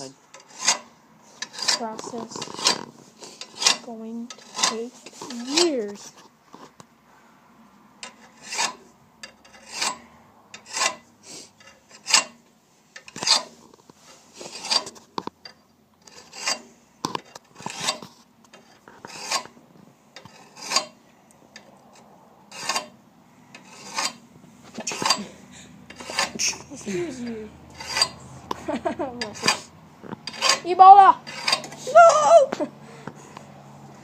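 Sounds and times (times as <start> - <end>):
file rasping on metal blade: 0.3 - 6.2, 8.0 - 12.4, 13.0 - 15.0, 16.0 - 19.6, 20.2 - 21.0, 22.5 - 28.3, 29.2 - 31.9.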